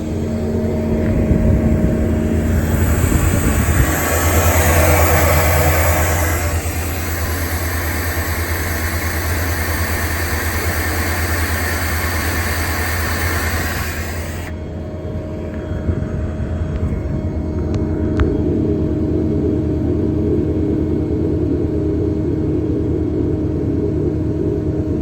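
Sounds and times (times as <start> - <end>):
heavy engine running: 0.0 - 18.2.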